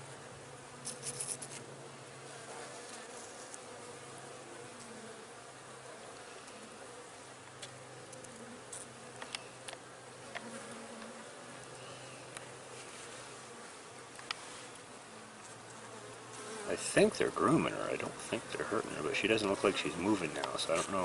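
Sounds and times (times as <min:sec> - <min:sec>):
honeybees buzzing: 0:00.0 - 0:21.0
faint ticks: 0:07.4 - 0:12.5, 0:14.1 - 0:15.8.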